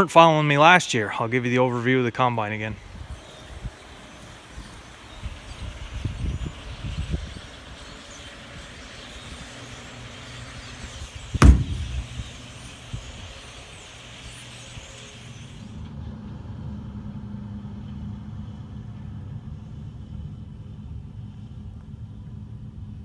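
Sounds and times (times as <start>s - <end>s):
sharp knock: 11.4s - 12.4s.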